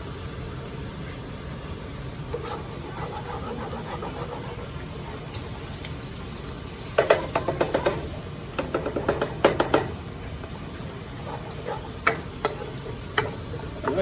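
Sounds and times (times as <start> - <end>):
spoon knocking against a pot: 7.0 - 10.0, 11.6 - 14.0.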